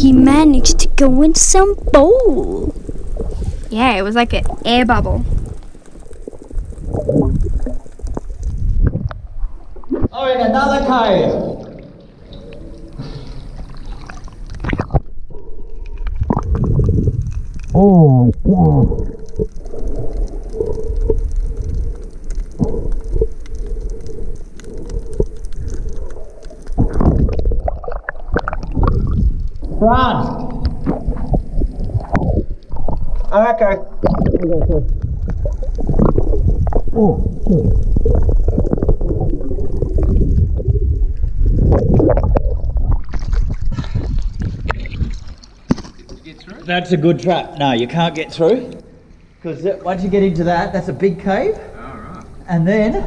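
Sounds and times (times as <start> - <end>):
heavy low rumbling: 0.0 - 10.2
water sloshing underwater: 0.0 - 10.2, 11.2 - 47.7, 48.6 - 49.5.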